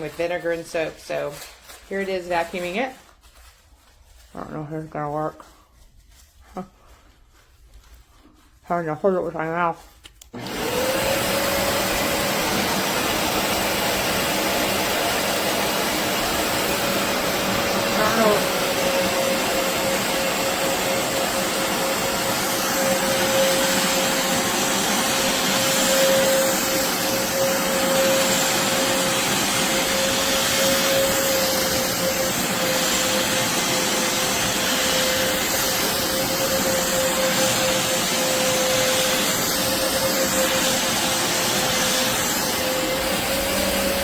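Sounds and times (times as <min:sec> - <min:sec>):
carpet cleaner running: 0:10.3 - 0:44.0.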